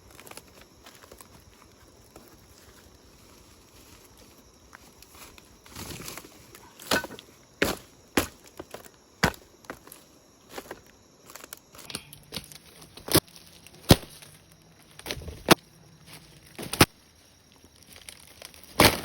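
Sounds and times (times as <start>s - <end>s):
blade chopping bamboo: 13.8s - 14.2s, 18.8s - 19.0s.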